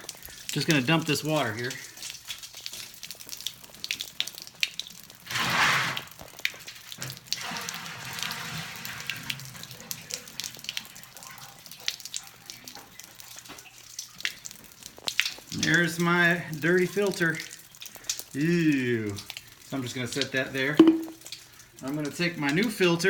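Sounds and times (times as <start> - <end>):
water pouring and splashing: 0.0 - 23.0
water running: 0.0 - 23.0
canister clicks and knocks: 20.8 - 21.2.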